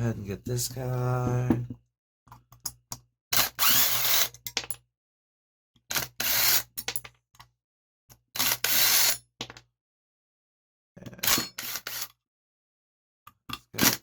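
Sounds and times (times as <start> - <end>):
cordless drill spinning screws: 3.4 - 4.3.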